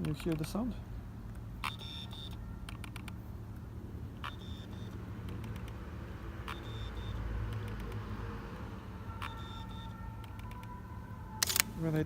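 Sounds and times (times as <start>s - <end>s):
lens click: 11.4s - 11.8s.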